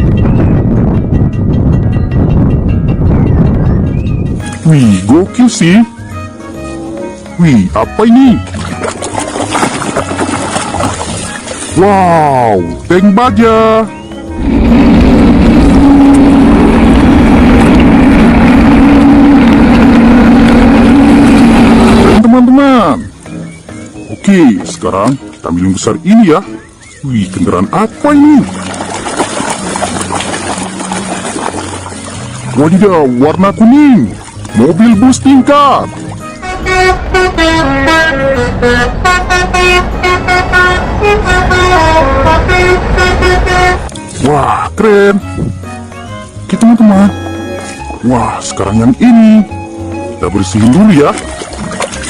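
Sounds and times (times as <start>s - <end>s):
bus multi-tone horn tune: 14.0s - 22.2s, 36.2s - 44.0s, 45.2s - 50.2s
motor droning: 14.2s - 22.3s.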